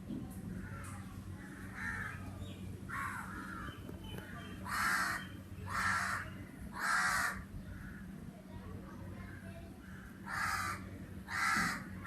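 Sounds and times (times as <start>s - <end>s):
crow cawing: 0.6s - 2.3s, 2.9s - 3.8s, 4.6s - 8.2s, 9.8s - 12.0s.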